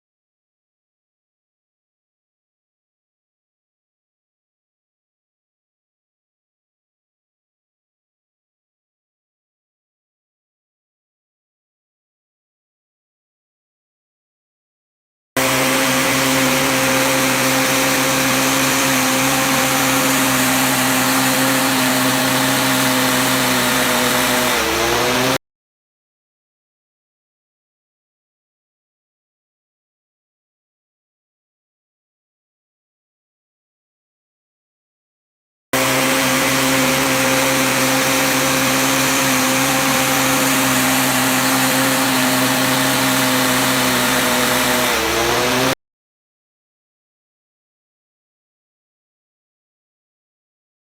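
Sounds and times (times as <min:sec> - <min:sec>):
motor and pump humming: 0:15.4 - 0:25.4, 0:35.8 - 0:45.8
pressure washer running: 0:15.4 - 0:25.4, 0:35.8 - 0:45.8.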